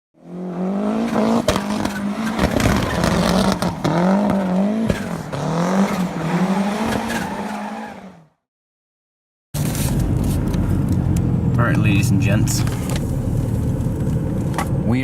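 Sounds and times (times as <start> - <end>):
vehicle engine revving: 0.2 - 8.0.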